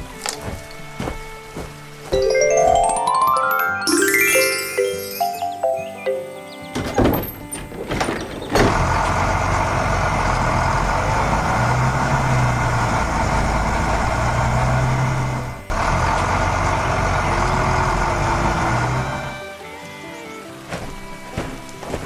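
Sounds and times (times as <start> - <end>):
heavy machine engine humming: 5.4 - 19.4
sharp knocks: 6.8 - 9.3.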